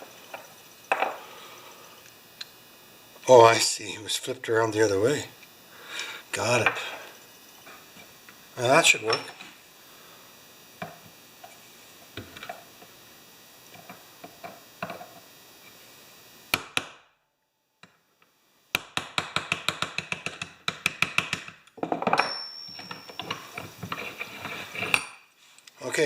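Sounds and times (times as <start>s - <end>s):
metal scraping: 23.8s - 25.1s.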